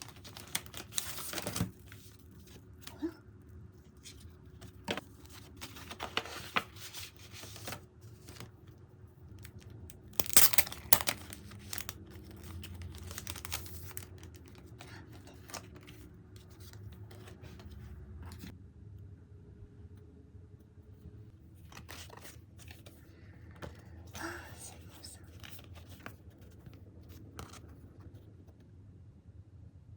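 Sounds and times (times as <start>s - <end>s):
tearing and crinkling: 0.0s - 2.2s, 9.4s - 16.0s.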